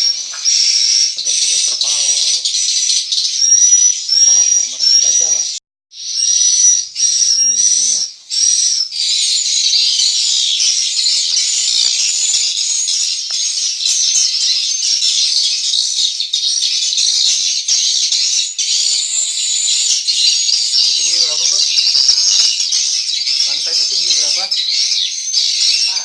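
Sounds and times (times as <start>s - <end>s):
swiftlets twittering: 20.3s - 26.0s.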